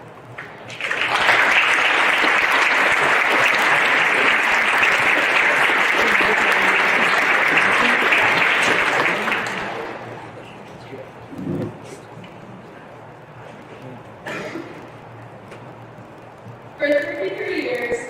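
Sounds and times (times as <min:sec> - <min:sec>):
audience applauding: 0:00.3 - 0:10.9.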